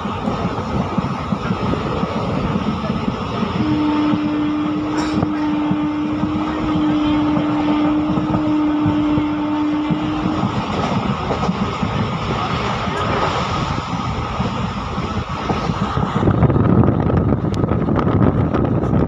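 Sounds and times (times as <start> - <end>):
passenger train running: 0.0 - 19.0
train horn blast: 3.4 - 11.6.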